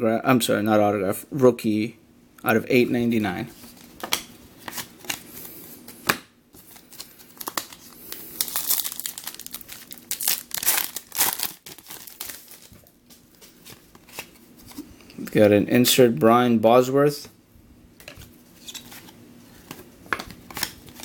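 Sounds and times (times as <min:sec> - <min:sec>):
wrapper crinkling and tearing: 0:06.7 - 0:14.4.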